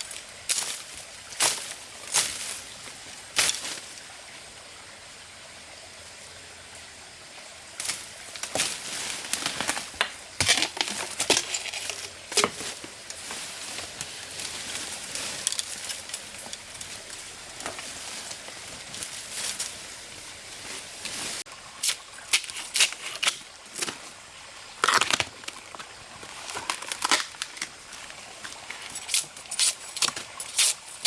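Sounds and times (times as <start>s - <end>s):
rustling and crinkling: 7.8s - 21.5s.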